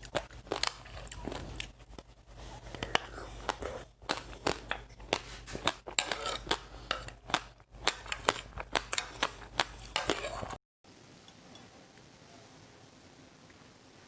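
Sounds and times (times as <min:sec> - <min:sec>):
seeds crunching being chewed: 0:00.0 - 0:10.6.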